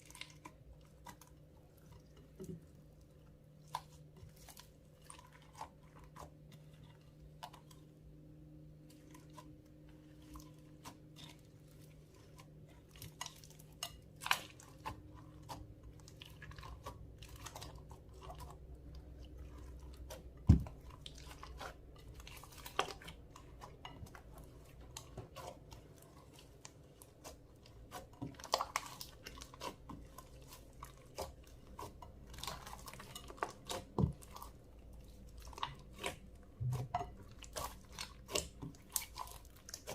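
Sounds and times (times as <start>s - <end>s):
slime squelching by hand: 0.0s - 39.9s.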